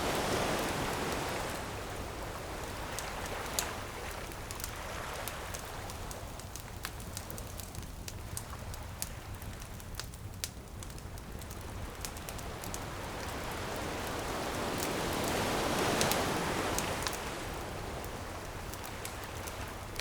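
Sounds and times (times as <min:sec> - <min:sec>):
ocean waves: 0:00.0 - 0:06.4, 0:11.7 - 0:20.0
bonfire crackling and popping: 0:00.0 - 0:20.0.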